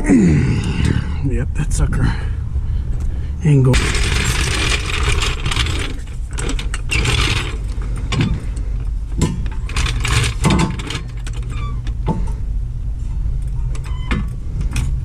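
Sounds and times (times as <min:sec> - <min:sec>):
steady low hum: 0:00.0 - 0:15.0
metallic scrapes and clanks: 0:03.7 - 0:08.6.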